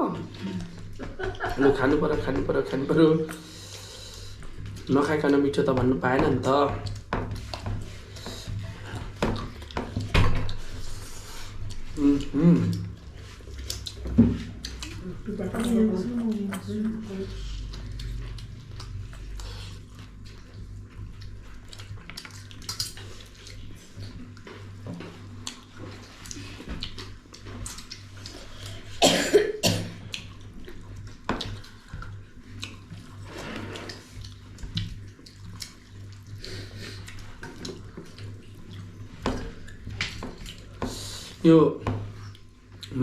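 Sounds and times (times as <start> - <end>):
loud cough: 29.0 - 30.0.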